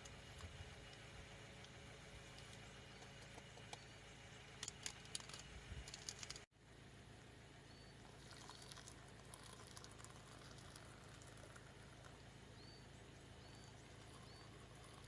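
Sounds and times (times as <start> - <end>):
short high bird chirps: 7.7 - 8.0.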